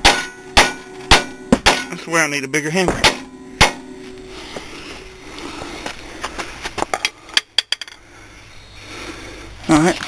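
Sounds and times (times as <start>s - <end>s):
hammer striking steel: 0.0s - 5.3s.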